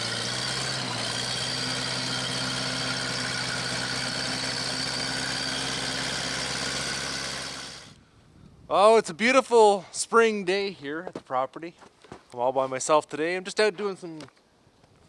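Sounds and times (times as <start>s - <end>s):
small engine running: 0.0s - 8.0s.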